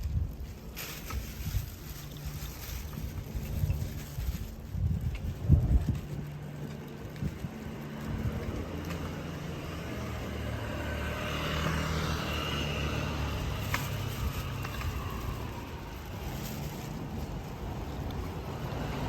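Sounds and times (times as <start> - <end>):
vehicle driving past: 7.8 - 16.0.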